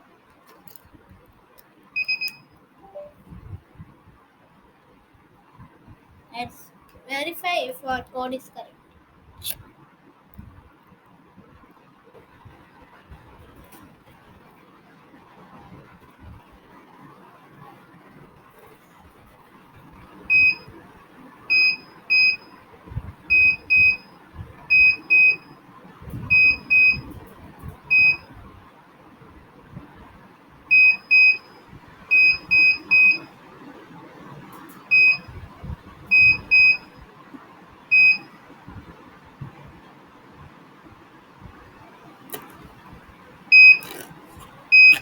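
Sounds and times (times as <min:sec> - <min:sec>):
buzzer beeping morse code: 0:20.3 - 0:20.7, 0:21.5 - 0:22.5, 0:23.3 - 0:24.1, 0:24.7 - 0:25.5, 0:26.3 - 0:27.1, 0:30.7 - 0:33.3, 0:36.1 - 0:36.9, 0:43.5 - 0:44.0, 0:44.7 - 0:45.0.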